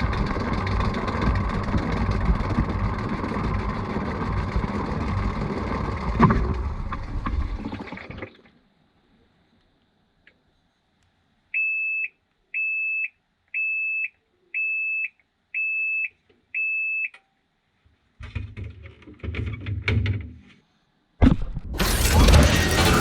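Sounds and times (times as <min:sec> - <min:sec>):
washing machine beeps: 0:11.5 - 0:17.2
knocking and rattling: 0:18.2 - 0:20.4.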